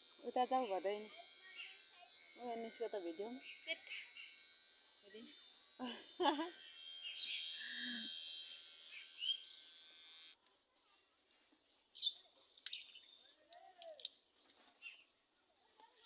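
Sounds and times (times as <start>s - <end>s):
electric hair clipper buzzing: 0.0s - 10.4s
bird chirps: 7.0s - 7.6s, 8.9s - 9.7s, 12.0s - 13.4s.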